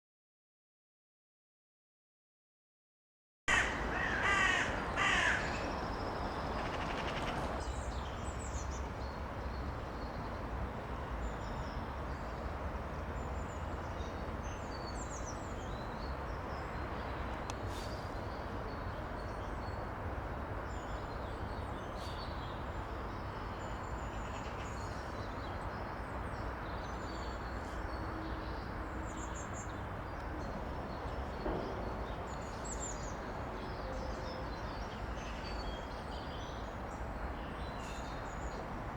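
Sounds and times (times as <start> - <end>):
crow cawing: 3.5 - 5.9, 6.5 - 7.4.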